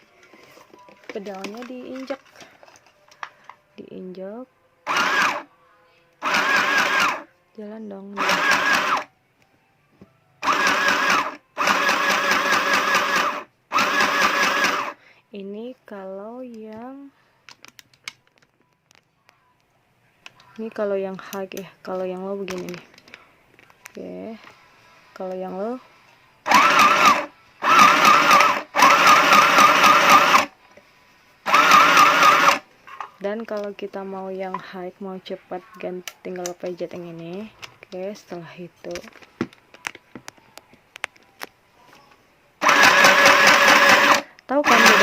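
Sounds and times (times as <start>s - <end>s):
sewing machine stitching: 4.9s - 5.4s, 6.2s - 7.3s, 8.2s - 9.1s, 10.4s - 15.0s, 26.5s - 30.5s, 31.5s - 32.6s, 42.6s - 45.0s.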